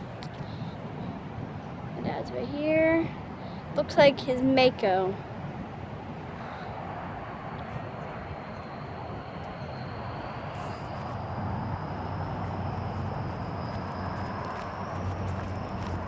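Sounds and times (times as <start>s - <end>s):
low outdoor rumble: 0.0s - 16.0s
faint high whine: 7.4s - 16.0s.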